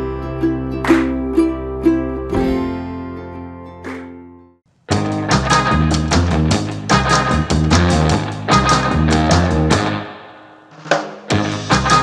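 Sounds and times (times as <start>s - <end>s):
strummed acoustic guitar: 2.3s - 4.3s.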